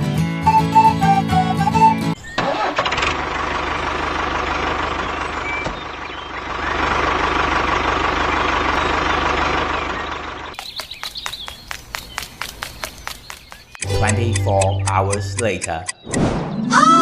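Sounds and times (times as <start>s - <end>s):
engine running with fast pulse: 2.3s - 14.9s.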